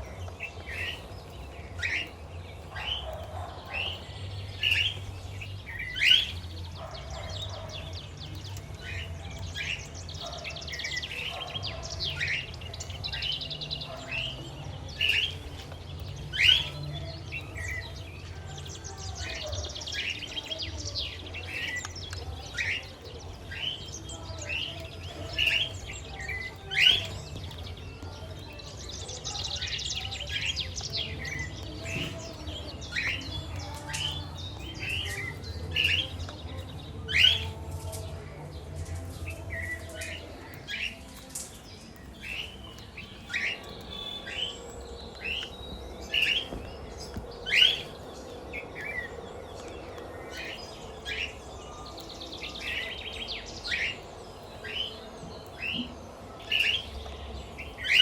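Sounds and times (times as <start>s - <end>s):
parrots chirping: 0.0s - 20.8s
bird chatter: 0.0s - 58.0s.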